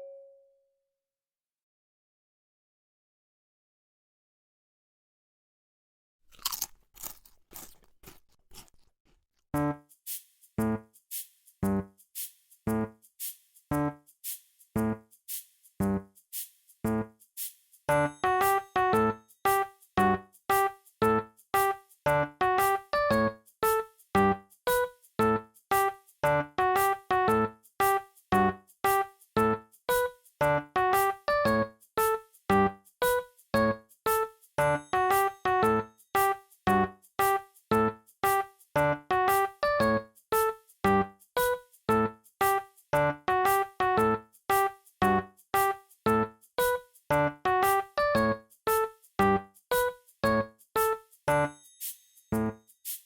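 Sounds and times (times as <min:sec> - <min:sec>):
keyboard playing detached chords: 0:09.6 - 0:09.9, 0:17.9 - 0:51.6
percussive background music: 0:09.6 - 0:33.2, 0:40.9 - 0:48.4.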